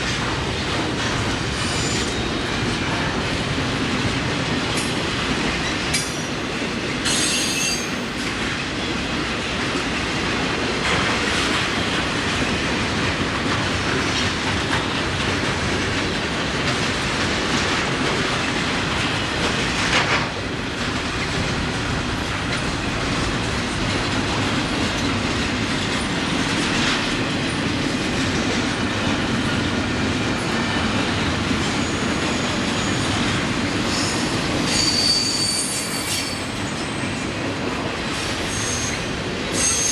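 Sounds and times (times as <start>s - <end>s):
rail cars rumbling on track: 0.0s - 39.9s
high-pitched wheel squeals: 33.9s - 36.5s, 38.5s - 39.0s, 39.6s - 39.9s.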